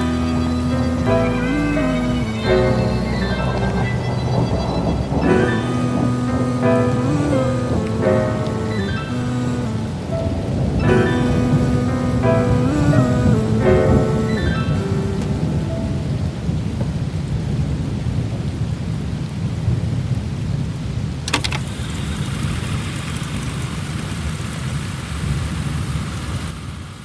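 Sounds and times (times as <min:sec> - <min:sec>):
song ending: 0:00.0 - 0:16.3
thunder crack: 0:00.0 - 0:18.6
rumbling thunder: 0:00.0 - 0:21.3
rain hiss: 0:00.0 - 0:27.0.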